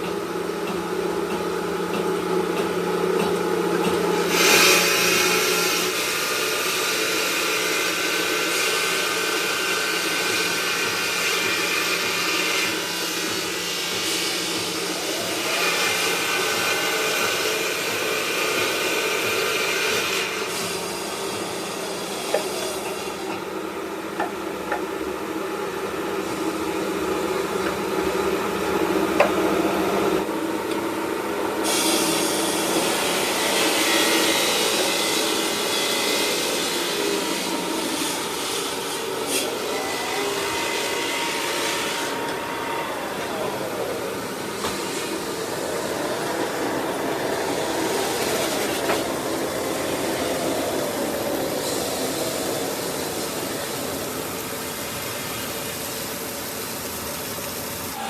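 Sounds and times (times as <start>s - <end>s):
machine cutting and grinding: 31.6s - 55.8s.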